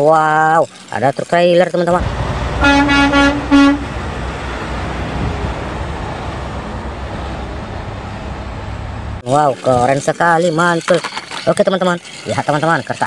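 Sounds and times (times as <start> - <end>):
low engine rumble: 1.9 - 9.2
truck horn toots: 2.0 - 6.9.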